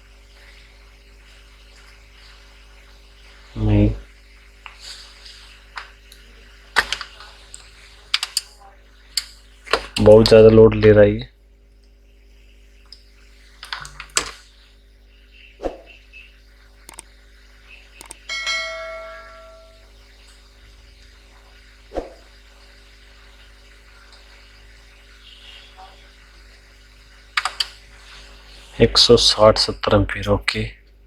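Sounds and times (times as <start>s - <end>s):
faint steady hum: 0.0s - 31.0s
tools clicking and knocking: 18.0s - 19.7s
metallic ring: 18.2s - 19.9s.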